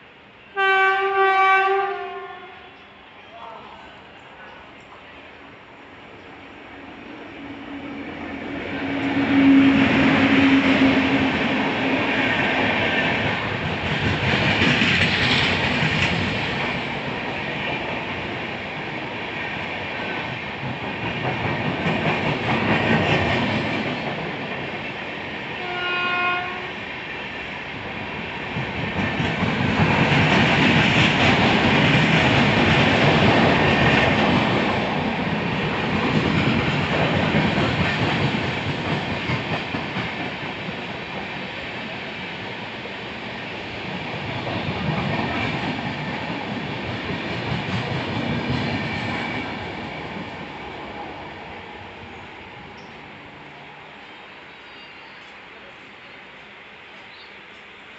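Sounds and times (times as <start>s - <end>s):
train passing with wheel clatter: 0.0s - 57.9s
train horn: 0.4s - 3.2s, 8.8s - 11.4s, 25.6s - 26.9s.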